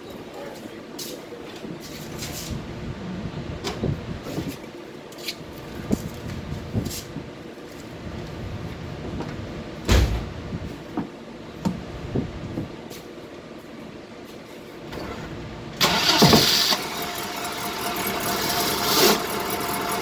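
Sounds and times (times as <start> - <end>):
loud thump: 9.9 - 10.4
car engine running: 15.8 - 20.0
clutch grinding and knocking: 16.1 - 20.0.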